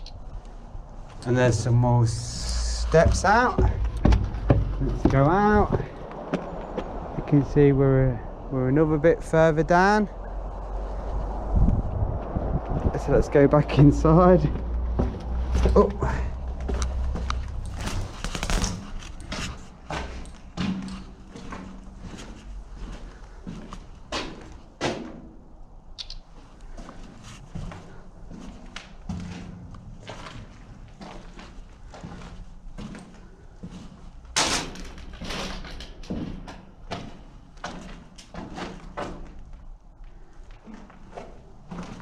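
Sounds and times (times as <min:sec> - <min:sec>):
footsteps scuffing: 0:01.0 - 0:07.0, 0:14.4 - 0:25.0, 0:26.4 - 0:34.3, 0:37.0 - 0:42.0
wind rumbling on microphone: 0:10.1 - 0:19.9.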